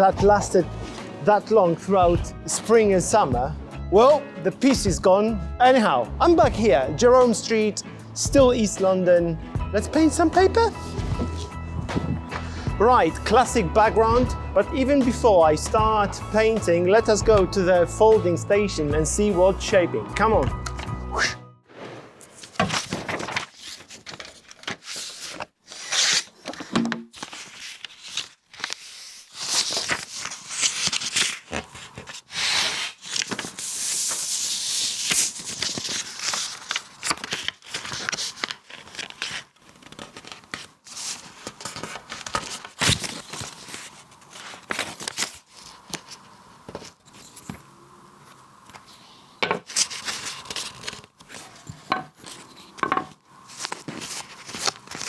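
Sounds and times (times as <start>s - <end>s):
paper crinkling and rustling: 0.0s - 2.0s, 22.3s - 49.0s, 49.6s - 55.0s.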